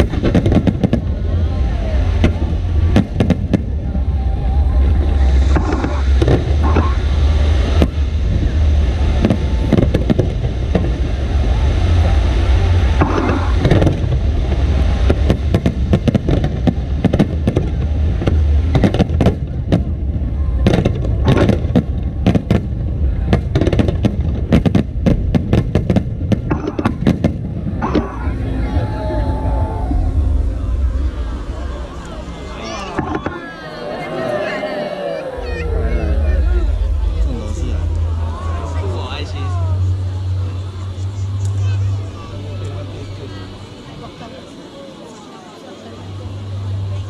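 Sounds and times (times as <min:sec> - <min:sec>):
fireworks crackling bangs: 0:00.0 - 0:28.7, 0:29.9 - 0:33.7
fireworks booming bursts: 0:00.0 - 0:33.7
low rumble: 0:00.0 - 0:44.7.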